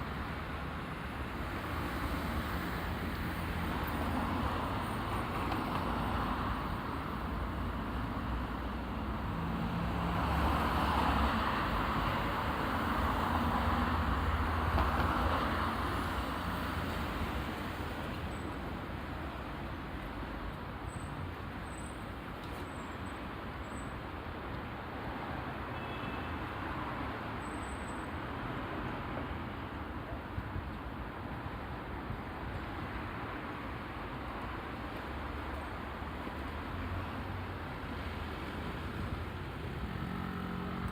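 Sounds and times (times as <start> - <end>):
traffic passing: 0.0 - 20.3, 32.0 - 40.9.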